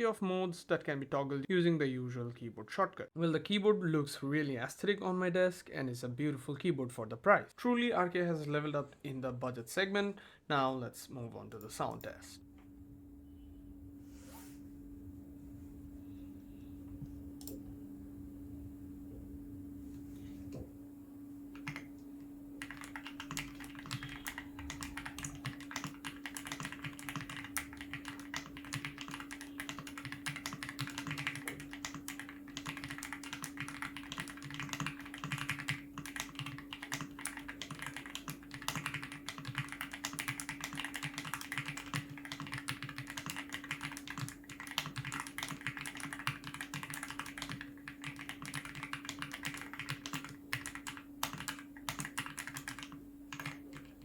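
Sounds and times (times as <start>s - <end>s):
mechanical keyboard typing: 21.6s - 21.9s, 22.6s - 54.0s.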